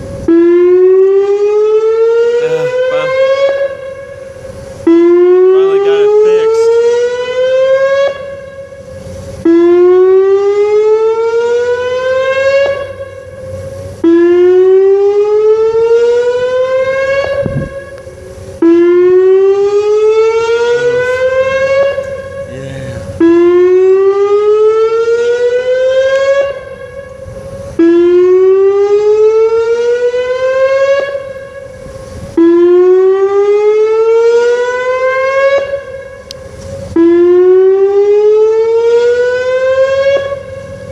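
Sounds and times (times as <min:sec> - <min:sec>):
electronic warning siren: 0:00.0 - 0:40.9.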